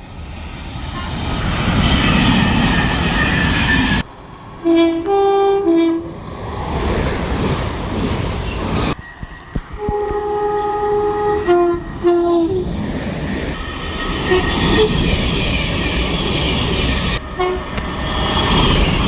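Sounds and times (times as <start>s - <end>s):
train running rumble: 0.3s - 19.0s
train horn: 4.6s - 6.2s, 9.8s - 12.7s, 14.2s - 14.9s, 17.4s - 17.8s.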